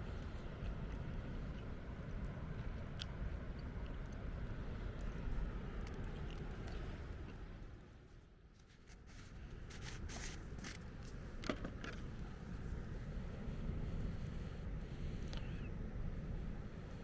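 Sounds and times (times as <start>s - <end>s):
light clicks and scrapes: 8.6s - 12.2s
wind rumbling on microphone: 9.4s - 17.0s.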